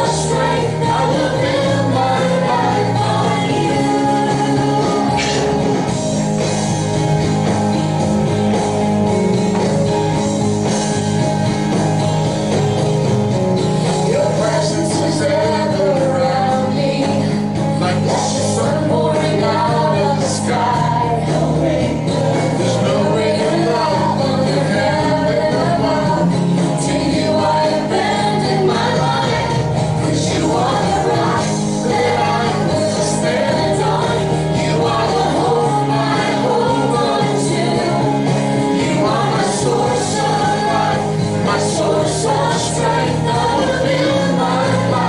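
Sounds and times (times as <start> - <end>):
rock worship song: 0.0 - 45.0
person singing: 13.9 - 45.0.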